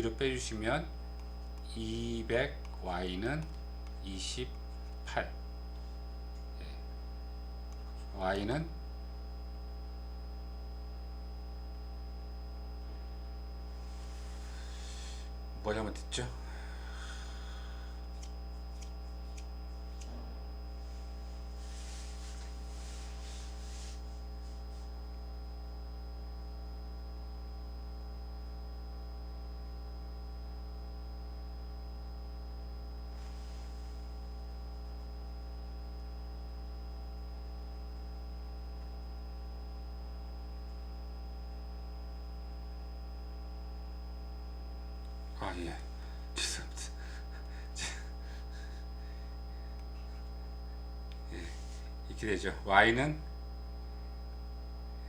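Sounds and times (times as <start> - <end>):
electrical mains hum: 0.0 - 55.0
faint high whine: 0.0 - 55.0
scratchy rustles: 20.8 - 24.9.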